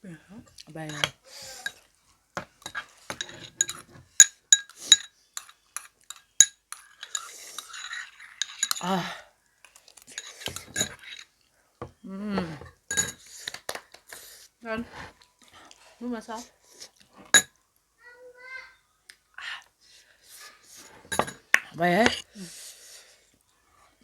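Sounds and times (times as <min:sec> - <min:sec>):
cutlery clinking on a plate: 0:00.9 - 0:01.8, 0:02.4 - 0:08.9, 0:10.1 - 0:11.3, 0:12.6 - 0:13.6, 0:17.3 - 0:17.5, 0:21.0 - 0:22.2
cutlery scraping a plate: 0:00.9 - 0:01.8, 0:02.4 - 0:08.9, 0:10.1 - 0:11.3, 0:12.9 - 0:13.6, 0:20.8 - 0:21.4.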